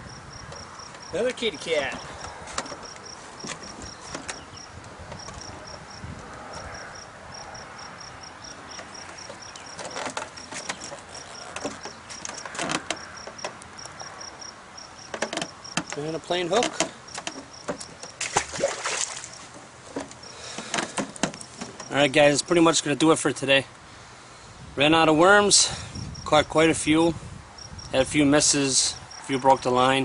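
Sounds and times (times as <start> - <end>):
insects chirping: 0.0 - 22.6, 27.5 - 30.0
sharp clicks and knocks: 8.7 - 14.1, 15.1 - 18.4, 19.5 - 22.0.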